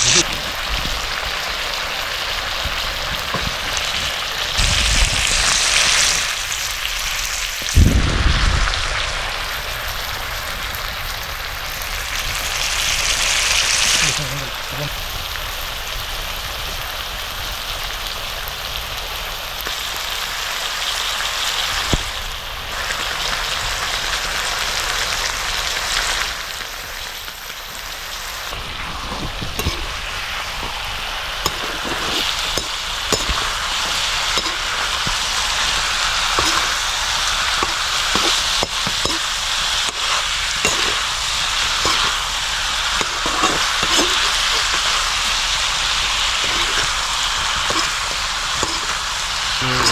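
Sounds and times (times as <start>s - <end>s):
curry sizzling in a pan: 0.0s - 49.9s
spoon knocking against pan: 31.5s - 35.2s, 36.4s - 36.8s, 37.6s - 39.3s, 40.7s - 41.0s, 41.8s - 42.2s, 47.6s - 49.0s.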